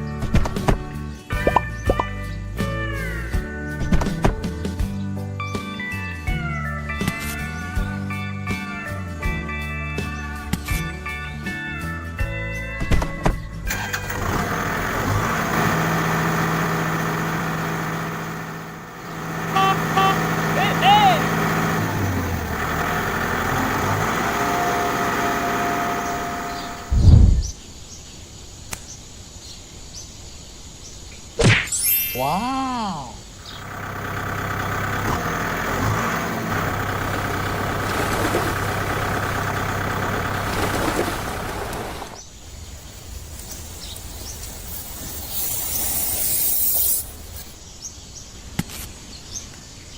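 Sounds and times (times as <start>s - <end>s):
engine starting and humming: 13.0s - 27.4s, 33.4s - 47.6s.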